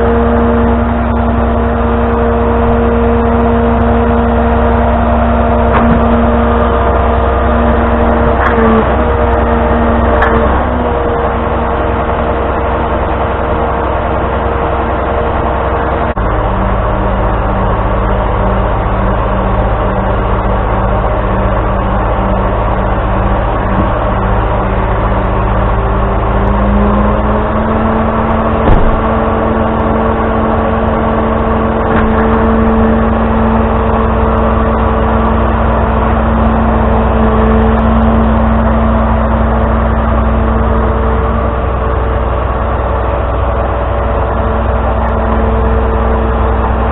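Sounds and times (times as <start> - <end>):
tow truck engine running: 0.0 - 46.9
single knock: 28.6 - 29.1.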